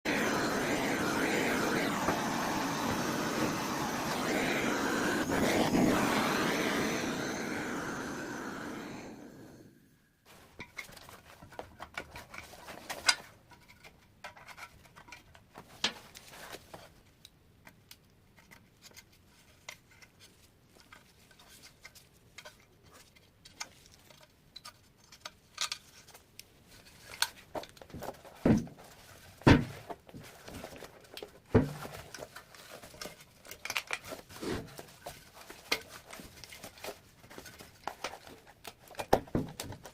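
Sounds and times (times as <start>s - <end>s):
small tools tapping and scraping: 17.6s - 39.9s.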